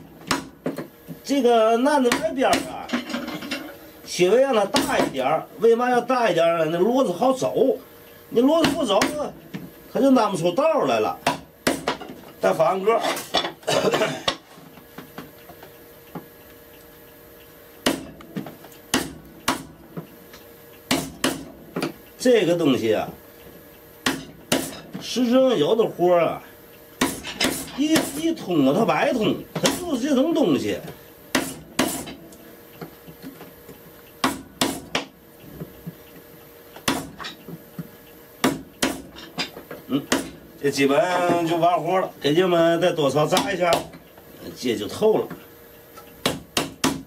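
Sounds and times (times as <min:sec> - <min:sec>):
sharp chisel strikes: 0:24.0 - 0:24.8, 0:27.0 - 0:28.2, 0:34.2 - 0:35.1, 0:38.4 - 0:39.1, 0:46.2 - 0:47.0
hammer striking chisel into wood: 0:46.2 - 0:47.0.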